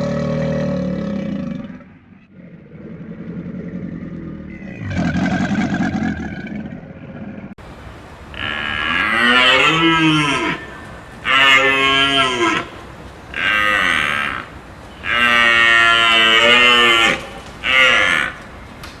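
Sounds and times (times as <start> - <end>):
cow mooing: 8.3 - 18.4.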